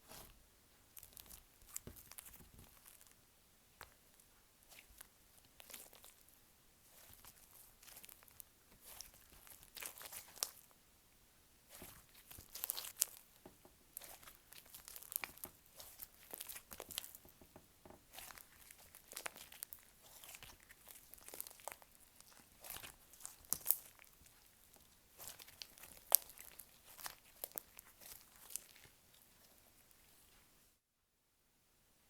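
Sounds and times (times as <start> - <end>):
slime crackling and popping: 4.7 - 6.2, 6.9 - 10.7, 11.7 - 13.3, 13.9 - 17.4, 18.0 - 29.6.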